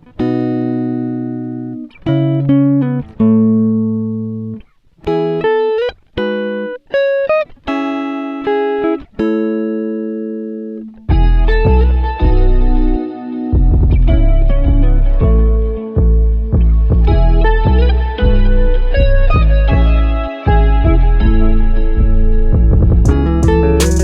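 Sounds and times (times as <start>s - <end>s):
plucked guitar music: 0.0s - 24.0s
deep bass notes: 11.1s - 24.0s.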